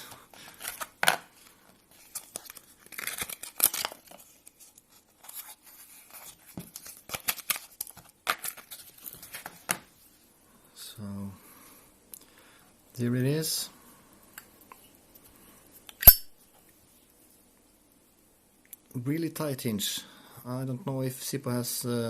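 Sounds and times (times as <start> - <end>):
packaging crinkling: 0.4 - 1.3, 1.9 - 9.8.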